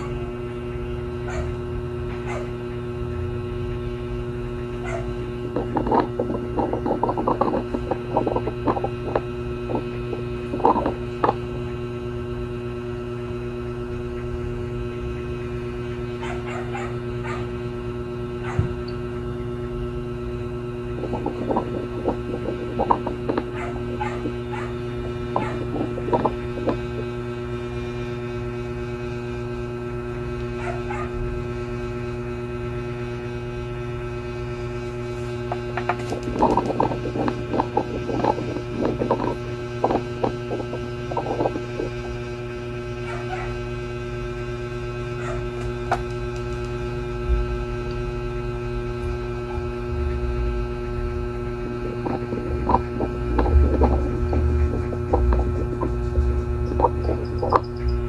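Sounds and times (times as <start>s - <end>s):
electrical hum: 0.0s - 58.0s
dog barking and yapping: 1.2s - 2.6s, 4.8s - 5.2s, 16.2s - 17.5s, 23.5s - 24.8s, 25.4s - 25.8s, 30.6s - 31.2s, 43.0s - 43.6s, 45.2s - 45.6s.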